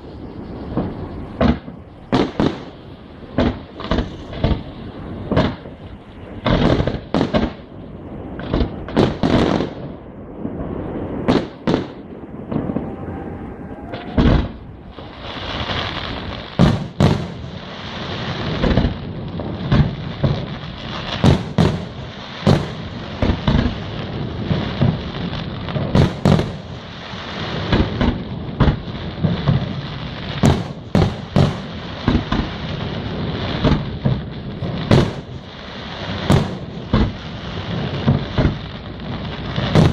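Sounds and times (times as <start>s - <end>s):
steady rushing hiss: 0.0s - 39.9s
firework shells bursting: 39.5s - 39.9s.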